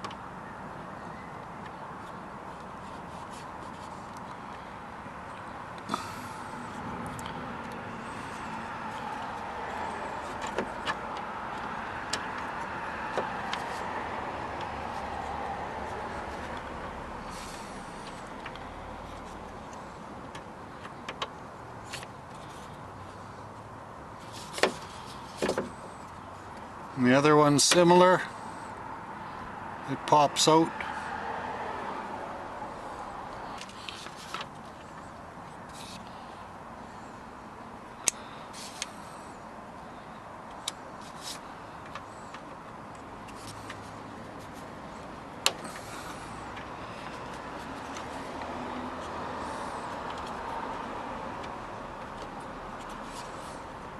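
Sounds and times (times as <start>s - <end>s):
clicks and knocks on car trim: 10.2s - 13.7s, 24.4s - 25.8s.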